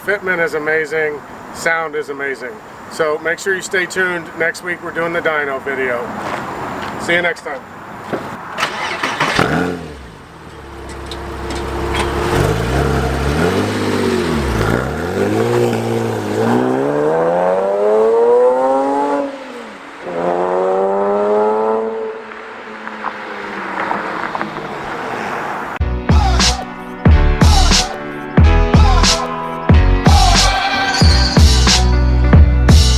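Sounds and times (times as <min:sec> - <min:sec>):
car engine revving: 0:08.5 - 0:25.8.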